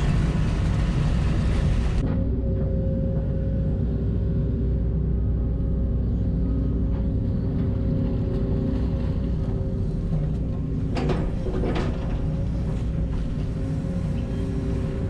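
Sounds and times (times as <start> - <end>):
diesel engine running: 0.0 - 2.0
metallic clanking and scraping: 10.1 - 14.8.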